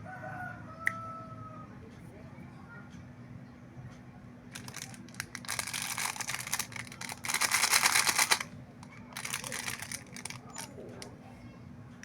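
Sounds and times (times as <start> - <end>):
plastic packaging crinkling: 4.5 - 8.5, 9.1 - 10.7.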